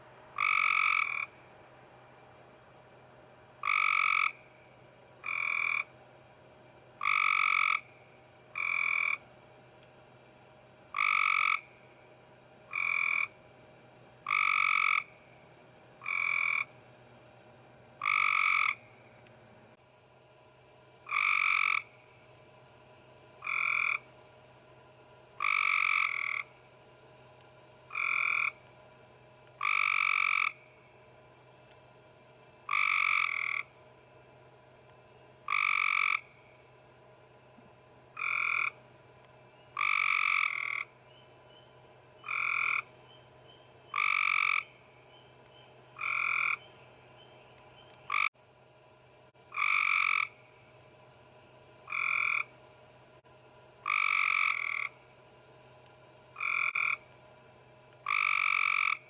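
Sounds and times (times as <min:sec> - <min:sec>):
frog croaking: 0:00.3 - 0:01.4, 0:03.6 - 0:04.6, 0:05.2 - 0:05.9, 0:07.0 - 0:09.2, 0:10.9 - 0:11.8, 0:12.7 - 0:13.4, 0:14.2 - 0:15.3, 0:16.0 - 0:16.8, 0:18.0 - 0:18.9, 0:21.0 - 0:22.0, 0:23.4 - 0:24.1, 0:25.4 - 0:26.6, 0:27.9 - 0:28.6, 0:29.6 - 0:30.8, 0:32.6 - 0:33.7, 0:35.4 - 0:36.6, 0:38.1 - 0:38.8, 0:39.7 - 0:41.0, 0:41.6 - 0:42.9, 0:43.9 - 0:44.9, 0:46.0 - 0:47.3, 0:48.0 - 0:48.3, 0:49.4 - 0:50.5, 0:51.8 - 0:52.6, 0:53.8 - 0:55.0, 0:56.3 - 0:57.1, 0:58.0 - 0:59.0.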